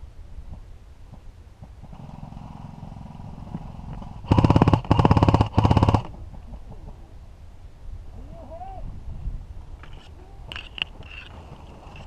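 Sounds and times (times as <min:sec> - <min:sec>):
airsoft rifle firing on full auto: 0:04.2 - 0:06.1.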